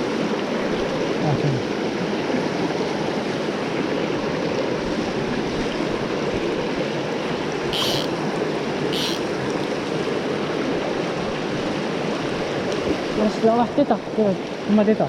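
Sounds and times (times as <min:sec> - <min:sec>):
short high hisses: 0:07.8 - 0:08.1, 0:09.0 - 0:09.2.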